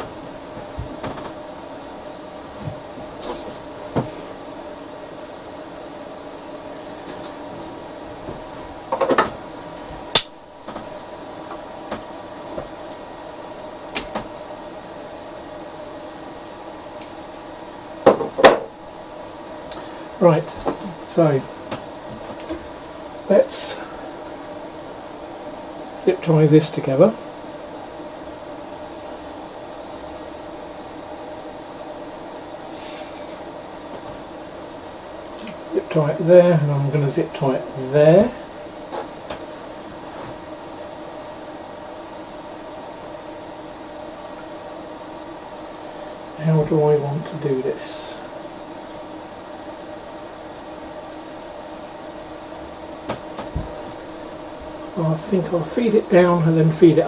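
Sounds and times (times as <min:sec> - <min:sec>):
cooling fans humming: 0:00.0 - 0:57.0
sharp click: 0:10.2 - 0:10.4.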